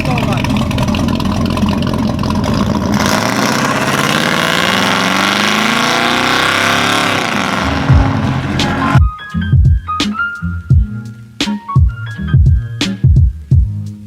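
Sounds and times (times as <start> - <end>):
truck engine accelerating: 0.0 - 9.0
deep thumps: 7.4 - 9.0.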